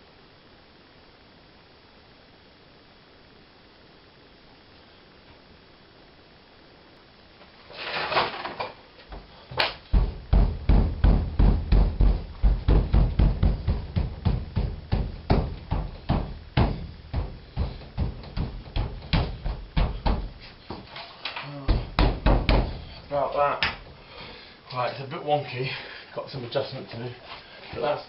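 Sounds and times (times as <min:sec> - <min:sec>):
rustling scrape: 0:07.6 - 0:08.6
dull thumps on glass: 0:09.9 - 0:20.4, 0:21.7 - 0:22.9.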